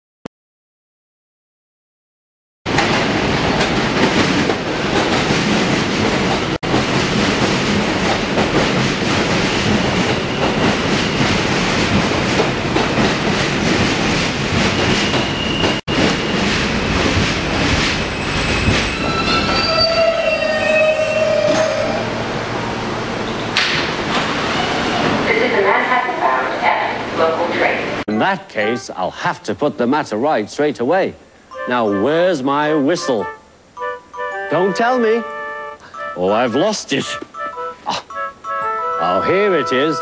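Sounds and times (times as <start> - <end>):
subway train on rails: 2.7 - 29.4, 31.2 - 40.0
wheel squeal: 14.8 - 16.5, 18.0 - 22.1.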